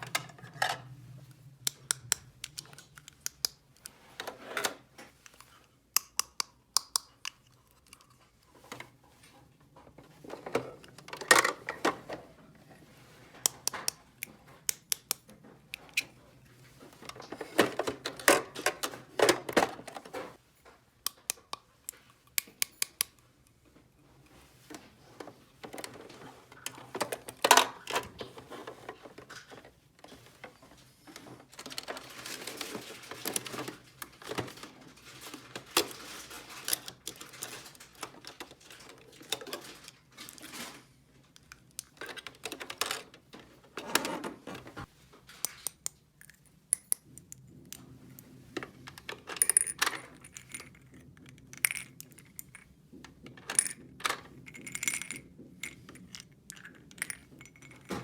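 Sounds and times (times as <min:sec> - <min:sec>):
hard toy pieces clattering: 0:53.4 - 0:58.0.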